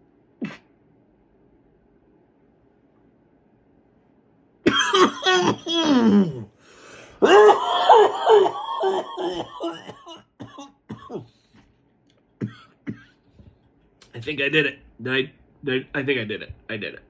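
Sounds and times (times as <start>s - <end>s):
person coughing: 4.7s - 6.5s, 7.2s - 11.4s, 12.4s - 13.2s.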